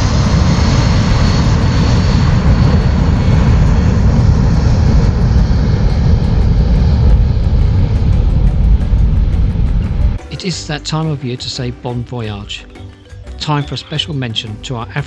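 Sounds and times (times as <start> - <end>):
loud low rumble with hiss: 0.0 - 11.2.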